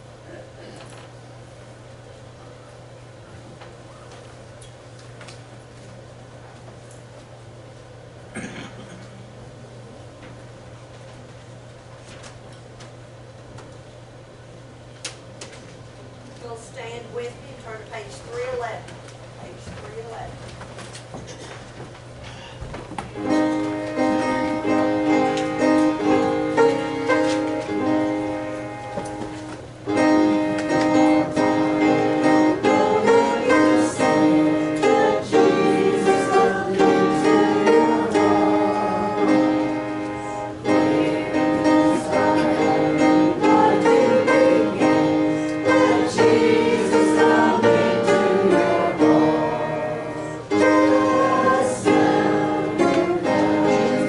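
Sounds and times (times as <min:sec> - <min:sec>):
congregation singing a hymn: 0:23.2 - 0:54.0
instrumental accompaniment: 0:23.2 - 0:54.0.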